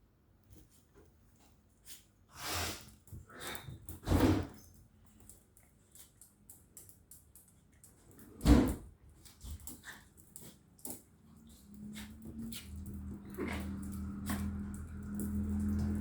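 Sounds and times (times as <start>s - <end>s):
dogs playing thumps and scuffles: 7.8s - 16.0s.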